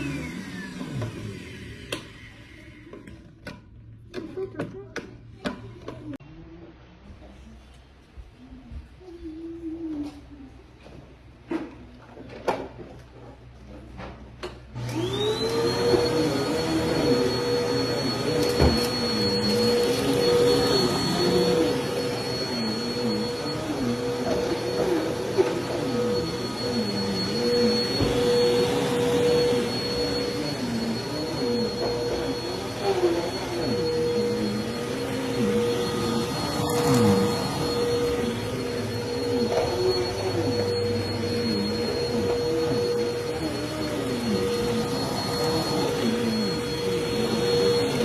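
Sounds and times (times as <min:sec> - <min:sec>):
vacuum cleaner motor whining: 0:00.0 - 0:03.6, 0:14.7 - 0:48.0.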